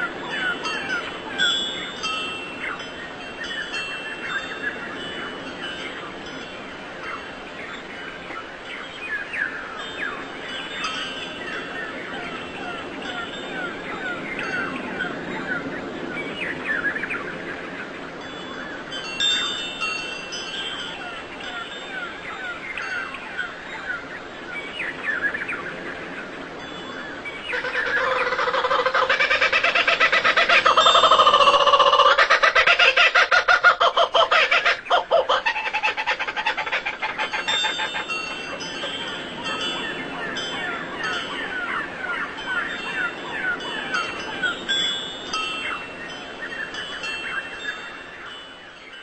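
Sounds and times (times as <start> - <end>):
birds chirping: 0.0 - 49.0.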